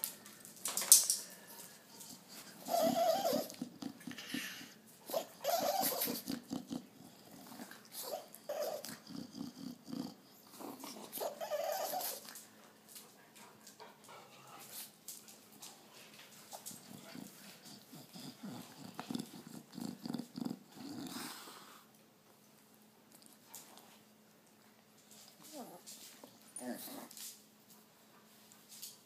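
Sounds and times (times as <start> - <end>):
dog growling: 2.0 - 12.2, 16.6 - 21.8.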